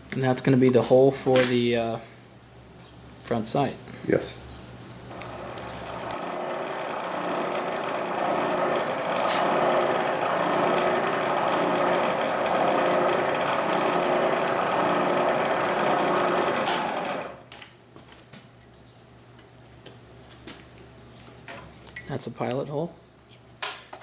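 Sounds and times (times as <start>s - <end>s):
milling machine spindle running: 5.1s - 17.4s.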